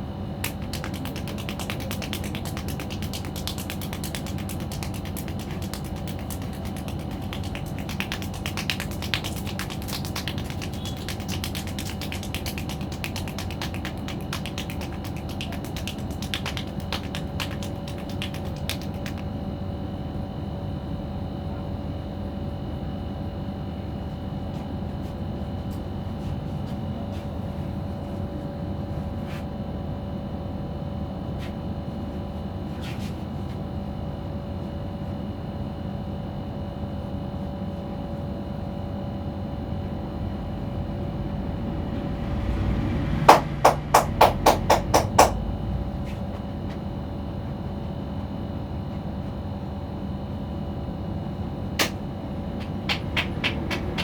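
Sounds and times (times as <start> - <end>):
steady background hum: 0.0 - 54.0
sharp percussive tapping: 0.4 - 19.2, 41.9 - 45.6, 52.6 - 54.0.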